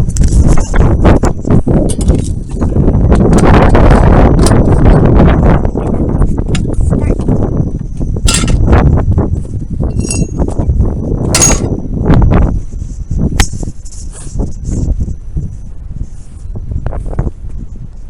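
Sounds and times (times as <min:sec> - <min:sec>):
low rumble on microphone: 0:00.0 - 0:18.0
metallic clink: 0:08.2 - 0:08.7, 0:09.9 - 0:10.6, 0:11.3 - 0:11.8.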